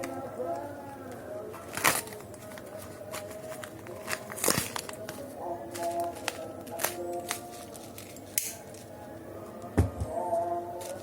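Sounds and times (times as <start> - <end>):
parcel rustling: 1.5 - 8.9.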